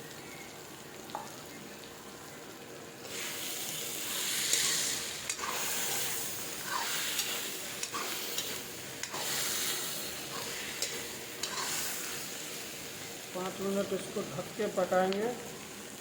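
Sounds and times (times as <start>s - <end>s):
food sizzling in a frying pan: 0.0s - 16.0s
spatula scraping a pan: 4.2s - 12.4s.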